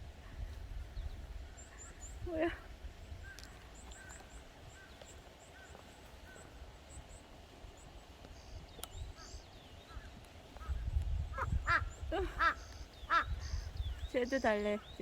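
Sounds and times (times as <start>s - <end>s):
small birds chirping: 0.4s - 15.0s
crow cawing: 11.4s - 13.7s.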